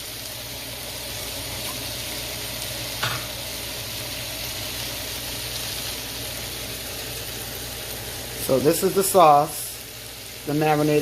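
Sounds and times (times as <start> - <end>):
food sizzling in a frying pan: 0.0 - 11.0.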